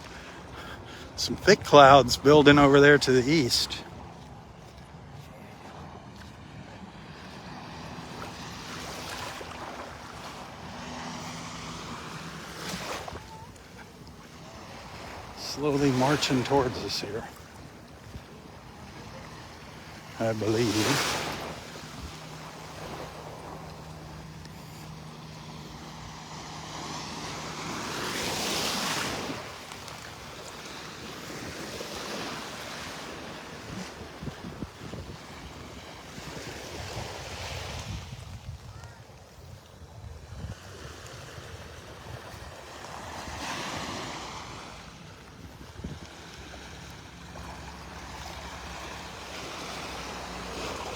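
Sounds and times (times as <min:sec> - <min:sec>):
surf washing on beach: 0:00.0 - 0:50.9
wind on microphone: 0:33.7 - 0:42.6.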